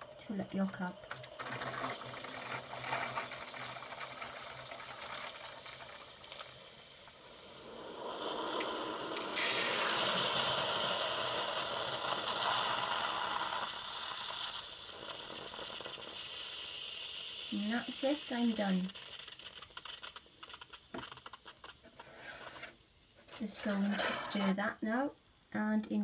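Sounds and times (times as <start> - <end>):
steam hissing and spluttering: 0.3 - 25.3
pump humming: 1.4 - 16.1.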